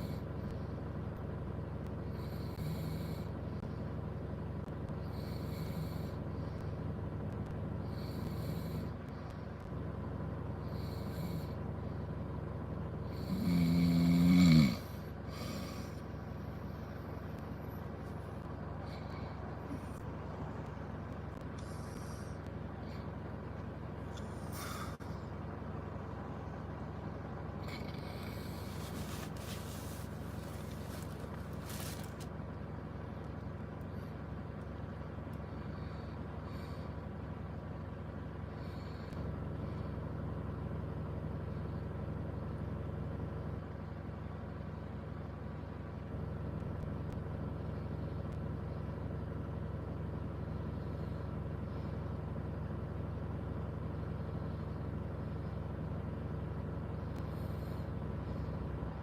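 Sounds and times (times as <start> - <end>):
vehicle engine idling: 0.0 - 59.0
short hisses: 24.2 - 25.0.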